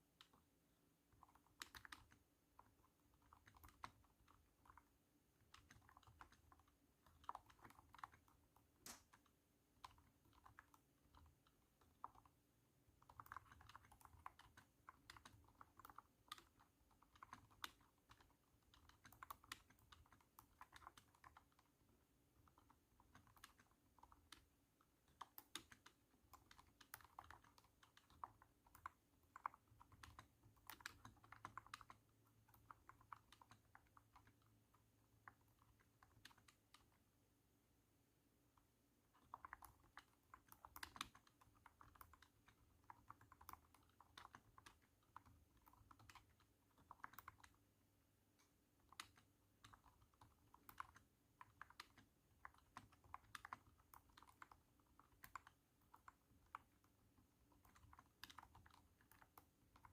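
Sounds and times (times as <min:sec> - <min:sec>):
thunky keyboard keystrokes: 0:39.1 - 0:47.6, 0:48.4 - 0:59.9.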